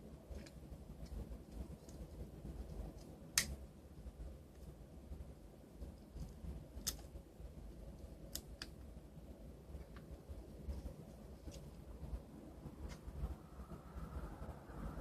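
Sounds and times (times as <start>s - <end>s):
low rumble: 9.1s - 15.0s.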